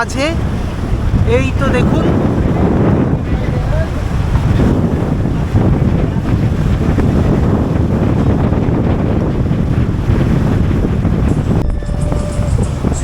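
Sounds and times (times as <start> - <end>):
sea waves rushing: 0.0 - 13.0
wind buffeting microphone: 0.0 - 13.0.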